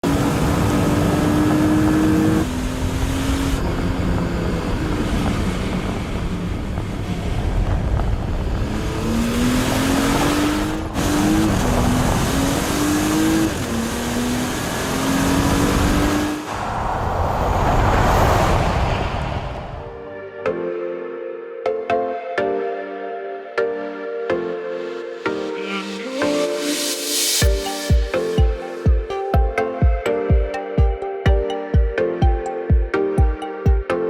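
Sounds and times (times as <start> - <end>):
car engine accelerating hard: 0.0 - 20.0.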